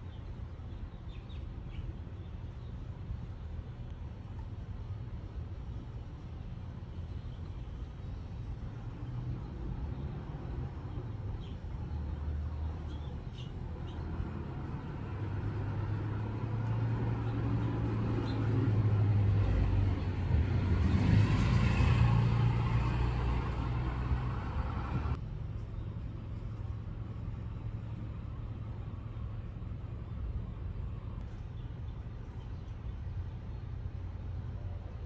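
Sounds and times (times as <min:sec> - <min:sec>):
vehicle engine running: 0:13.8 - 0:25.2.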